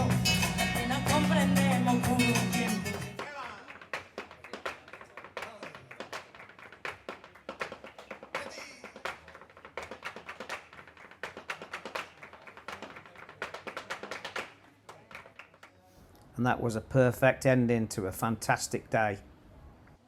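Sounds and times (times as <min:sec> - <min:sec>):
rapid percussive taps and claps: 0:02.0 - 0:15.7.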